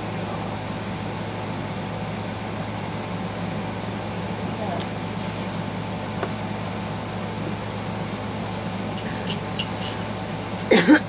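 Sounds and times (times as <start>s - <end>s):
room hum: 0.0s - 11.0s
metal parts clinking: 9.0s - 10.8s.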